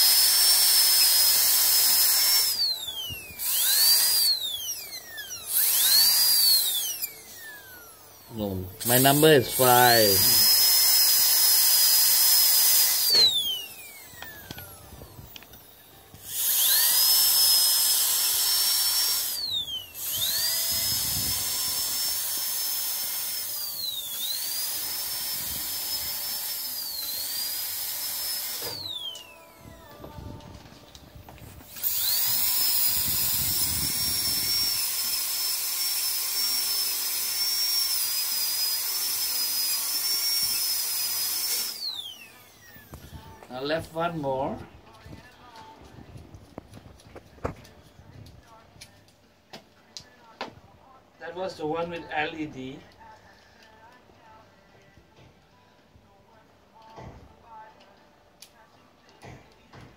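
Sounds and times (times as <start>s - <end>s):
dental drill whining: 0.0s - 45.7s.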